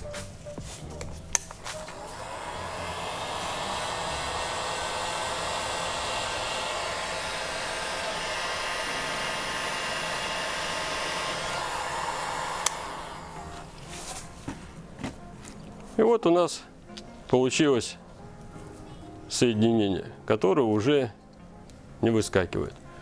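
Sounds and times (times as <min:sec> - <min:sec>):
heat gun blowing hot air: 0:01.3 - 0:14.2.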